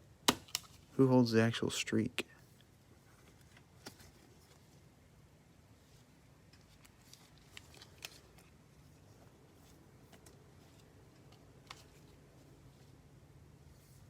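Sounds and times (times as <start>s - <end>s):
cards rustling into plastic sleeves: 2.5s - 4.9s, 6.4s - 13.1s.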